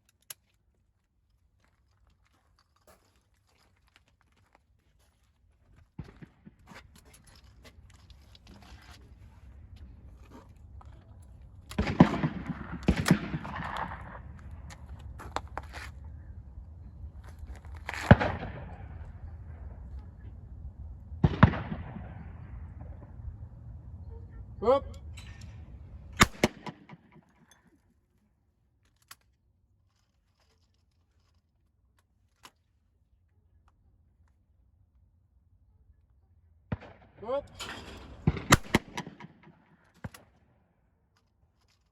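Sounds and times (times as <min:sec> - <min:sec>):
shotgun shots echoing: 0:11.8 - 0:14.7, 0:18.0 - 0:19.3, 0:21.2 - 0:23.2, 0:26.1 - 0:27.3, 0:36.7 - 0:39.7.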